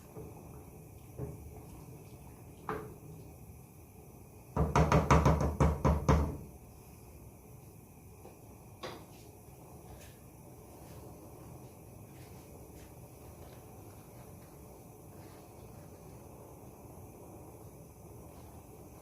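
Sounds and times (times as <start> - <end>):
hard knocks and clatter in kitchen: 1.2 - 1.5, 2.6 - 3.1, 4.5 - 6.5, 8.8 - 9.1.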